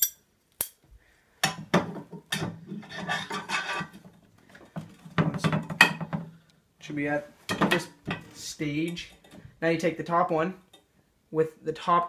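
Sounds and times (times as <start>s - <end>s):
metal parts scraping and clicking: 2.9s - 3.9s.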